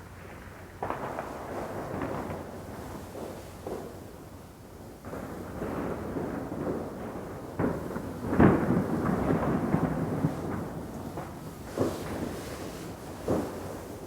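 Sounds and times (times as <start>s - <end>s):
fireworks bangs: 7.6s - 14.0s.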